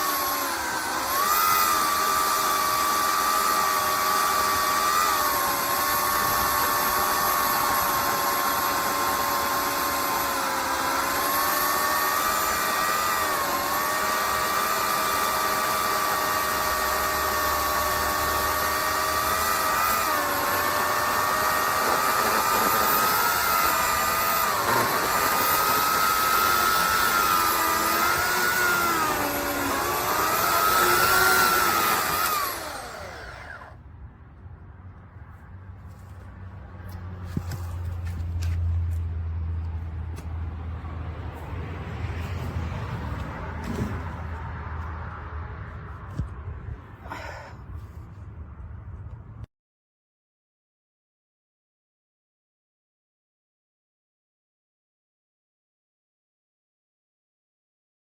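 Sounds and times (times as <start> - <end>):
electric chainsaw motor whining: 0.0 - 33.8.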